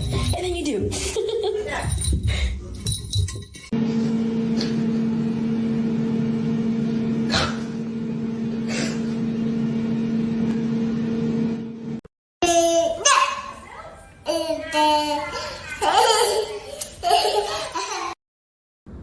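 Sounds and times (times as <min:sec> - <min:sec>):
steady machine hum: 0:03.8 - 0:12.0.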